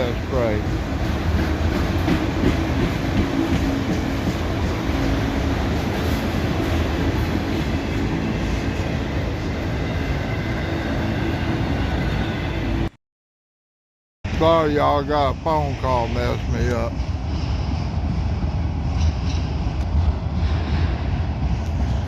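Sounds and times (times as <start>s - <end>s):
steel wheels clattering on rails: 0.0s - 8.9s, 14.4s - 22.0s.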